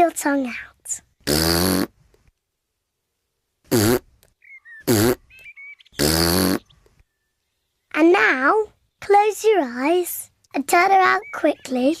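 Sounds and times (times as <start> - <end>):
cartoon piglet buzzy vocal noises: 1.2 - 1.9, 3.7 - 4.1, 4.8 - 5.2, 6.0 - 6.7.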